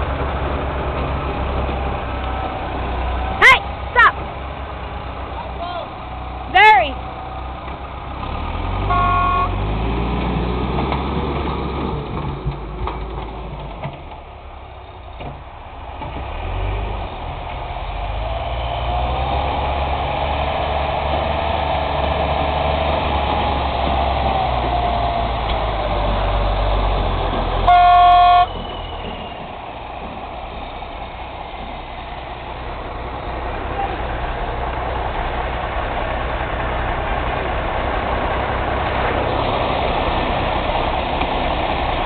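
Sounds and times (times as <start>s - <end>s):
backhoe diesel engine running: 0.0s - 42.0s
horn honk: 8.9s - 9.6s, 27.6s - 28.6s.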